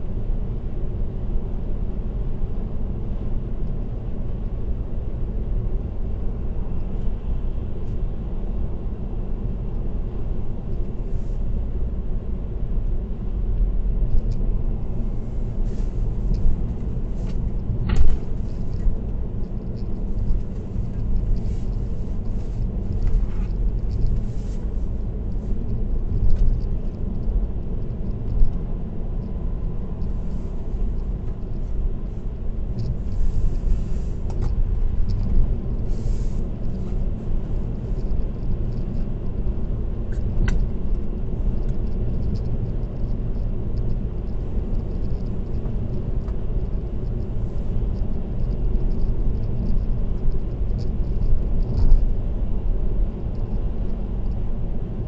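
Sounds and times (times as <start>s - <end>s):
car road and tyre noise: 0.0s - 55.0s
faint ticks: 41.6s - 46.4s.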